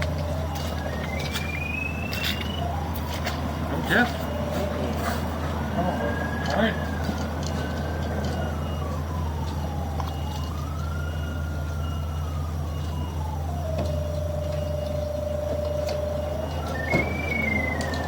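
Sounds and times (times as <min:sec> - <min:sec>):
locator signal tone sliding in pitch: 0:00.4 - 0:02.9, 0:11.2 - 0:18.0.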